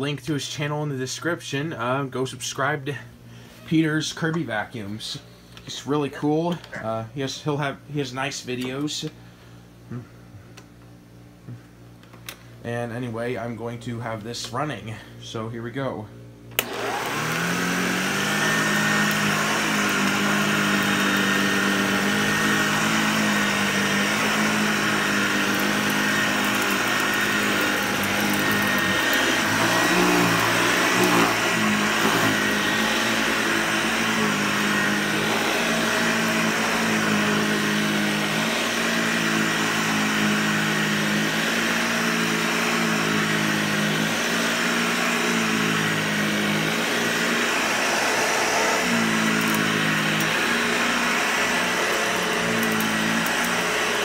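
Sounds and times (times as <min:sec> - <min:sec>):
vacuum cleaner running: 0:16.5 - 0:54.0.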